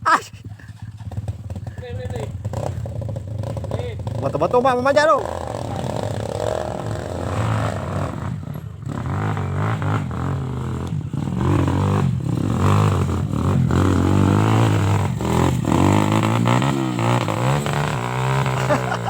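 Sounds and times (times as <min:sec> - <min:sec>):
motorcycle engine revving: 0:00.0 - 0:19.0
clatter: 0:08.1 - 0:19.0.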